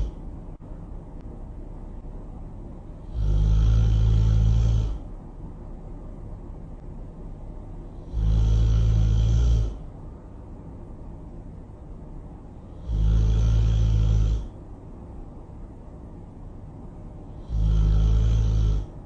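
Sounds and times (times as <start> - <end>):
loud low snoring: 0.0 - 0.2, 3.0 - 5.1, 7.9 - 9.9, 12.5 - 14.6, 17.3 - 19.0.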